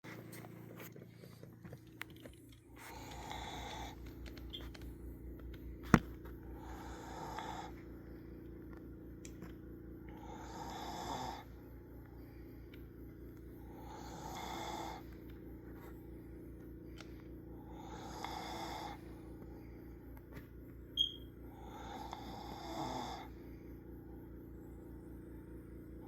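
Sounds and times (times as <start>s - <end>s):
steady low hum: 0.0s - 26.0s
person snoring: 6.5s - 7.8s, 10.1s - 11.6s, 13.6s - 15.1s, 17.6s - 19.0s, 21.5s - 23.4s.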